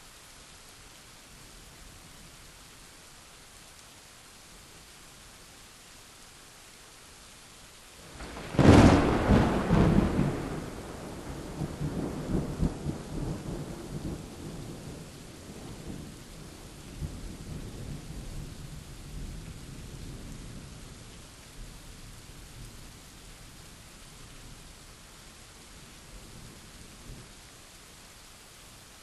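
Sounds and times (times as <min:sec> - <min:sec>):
rain falling steadily: 0:00.0 - 0:29.0
thunder rumbling: 0:08.1 - 0:16.1.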